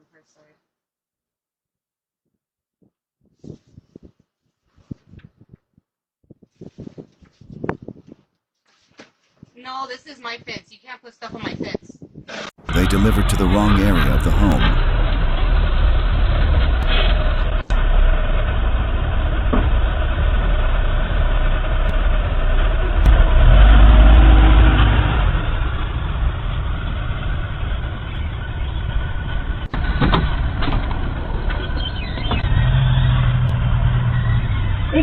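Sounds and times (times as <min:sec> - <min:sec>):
vehicle engine rumbling: 0:12.7 - 0:35.0.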